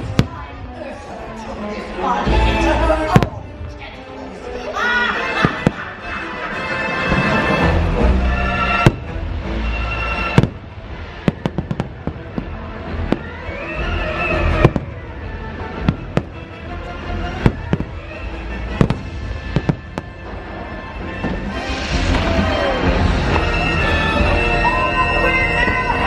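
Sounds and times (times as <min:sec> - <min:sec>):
fireworks bangs: 0:00.0 - 0:00.6, 0:03.1 - 0:03.7, 0:08.7 - 0:09.4, 0:10.2 - 0:23.7
soundtrack music: 0:00.0 - 0:26.0.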